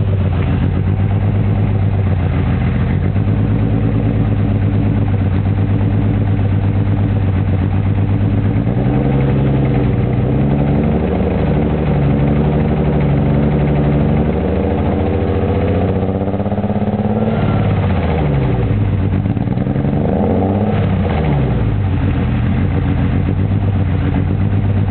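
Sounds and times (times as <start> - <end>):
car engine idling with misfire: 0.0 - 24.9.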